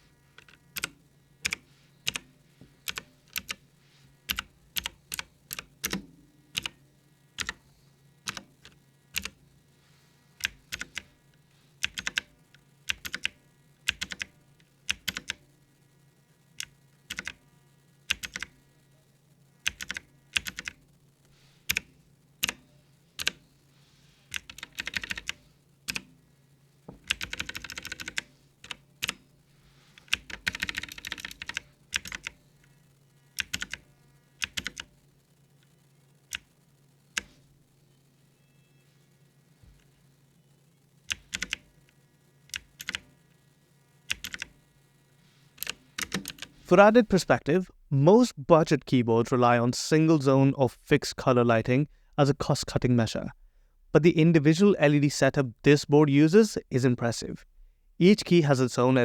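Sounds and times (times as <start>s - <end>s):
faint low hum: 0.0s - 59.0s
rapid typing: 0.4s - 2.2s, 4.3s - 6.0s, 7.4s - 7.6s, 8.3s - 9.4s, 10.4s - 11.1s, 11.8s - 12.3s, 12.9s - 15.4s, 16.6s - 17.4s, 18.1s - 18.6s, 19.7s - 20.8s, 21.7s - 22.6s, 24.3s - 26.1s, 27.0s - 29.2s, 30.0s - 32.4s, 33.4s - 33.8s, 34.4s - 34.9s, 41.1s - 41.7s, 42.5s - 43.1s, 44.1s - 44.6s, 45.6s - 46.5s.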